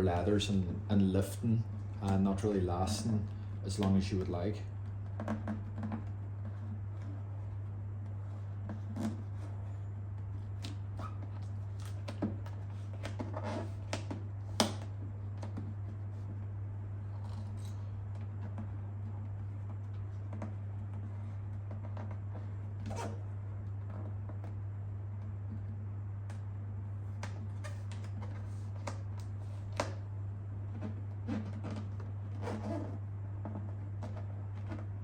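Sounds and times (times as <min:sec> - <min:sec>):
low electrical hum: 0:00.0 - 0:35.0.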